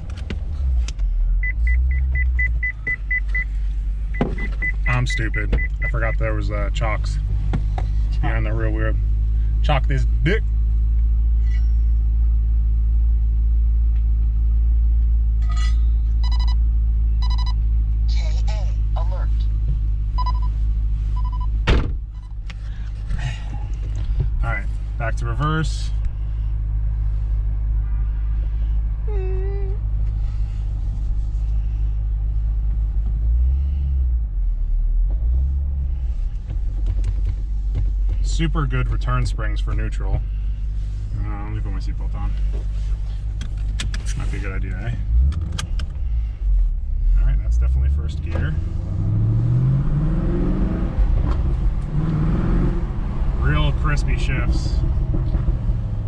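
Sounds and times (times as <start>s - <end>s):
car engine idling: 0.0s - 49.8s, 50.9s - 56.0s
brief tone: 15.4s - 16.6s.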